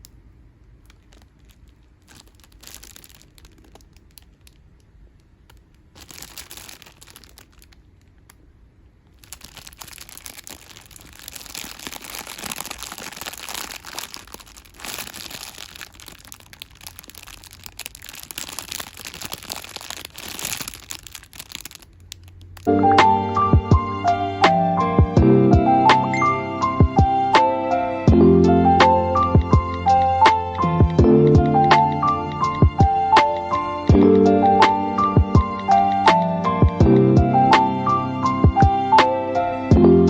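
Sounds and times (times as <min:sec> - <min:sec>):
plastic crinkling and rustling: 0:00.7 - 0:08.4, 0:09.0 - 0:22.7.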